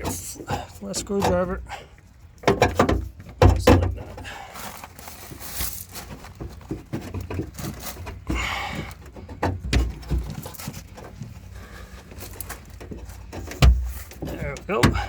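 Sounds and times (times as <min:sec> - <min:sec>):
heavier thumps: 0:12.9 - 0:15.0.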